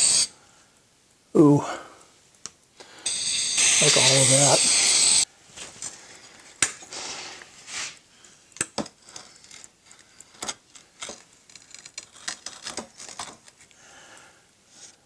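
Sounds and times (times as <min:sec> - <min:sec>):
sand scraping: 0:03.1 - 0:05.8, 0:06.9 - 0:08.0.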